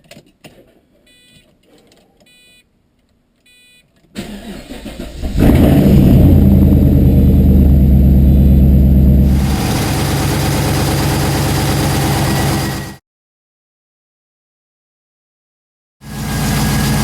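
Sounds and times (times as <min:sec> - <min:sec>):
engine running at fast idle: 0:06.2 - 0:13.0, 0:16.0 - 0:17.0
starter cranking engine: 0:09.2 - 0:13.0.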